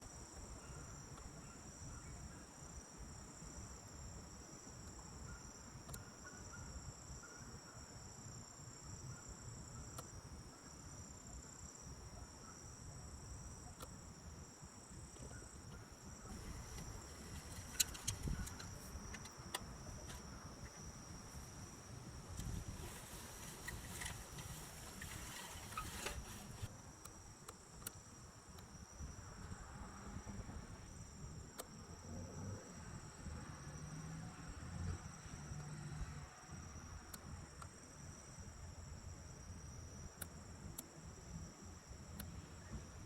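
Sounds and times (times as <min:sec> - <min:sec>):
insects trilling: 0:00.1 - 0:43.0.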